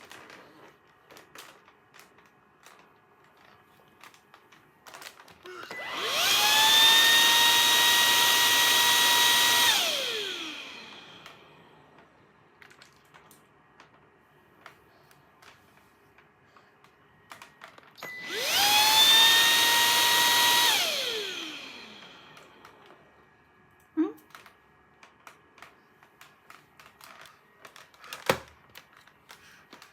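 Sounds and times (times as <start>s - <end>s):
vacuum cleaner motor whining: 4.9s - 12.0s, 16.8s - 23.4s.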